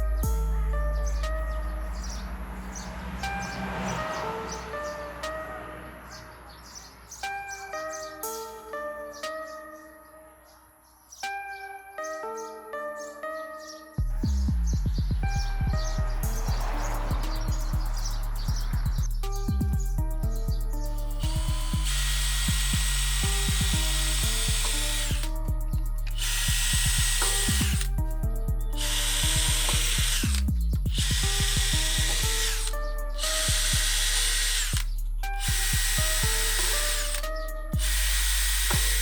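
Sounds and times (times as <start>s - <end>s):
background music with plucked notes: 0.0s - 39.0s
power tool running in bursts: 21.2s - 25.3s, 26.1s - 27.9s, 28.8s - 39.0s.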